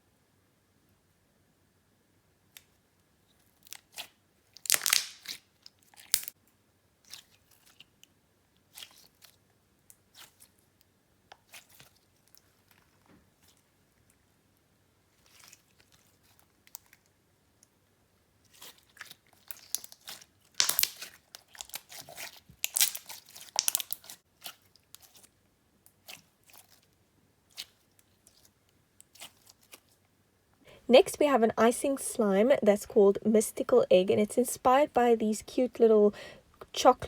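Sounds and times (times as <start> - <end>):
slime sticky crackles and pops: 3.6 - 6.4, 18.5 - 25.3, 27.5 - 30.0.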